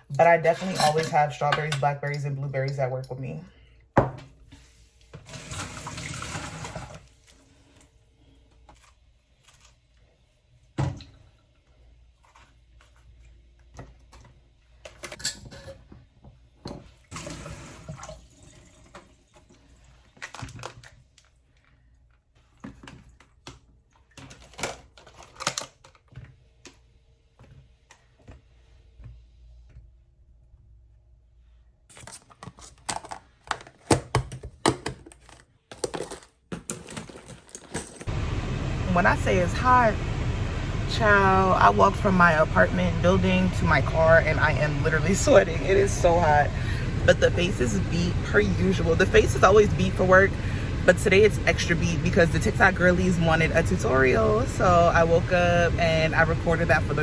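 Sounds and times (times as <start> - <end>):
running water: 5.2 - 7.4.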